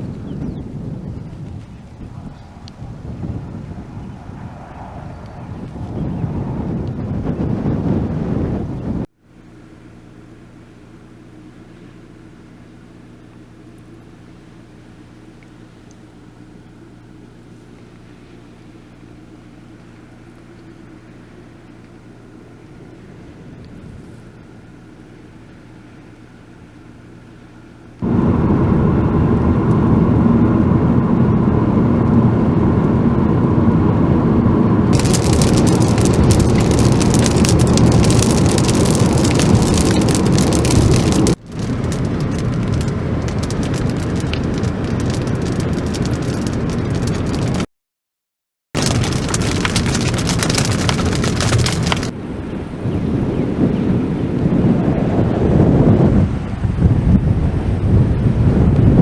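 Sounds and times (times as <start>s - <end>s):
heavy rain and wind: 28.0s - 47.7s, 48.8s - 59.0s
hailstones rattling: 34.9s - 47.7s, 48.8s - 52.1s.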